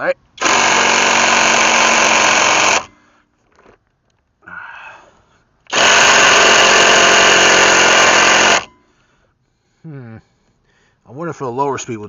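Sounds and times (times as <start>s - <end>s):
impact wrench hammering: 0.4s - 2.9s, 5.7s - 8.7s.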